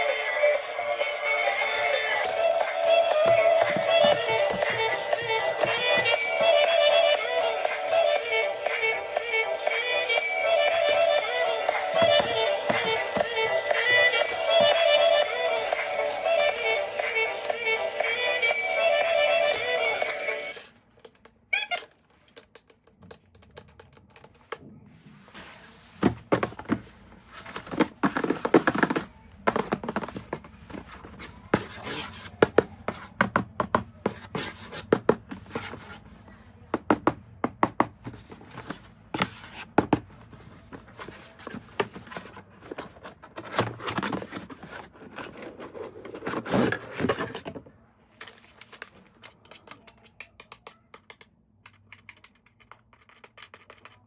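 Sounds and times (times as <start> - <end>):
clicks and knocks of toy: 49.2 - 54.0.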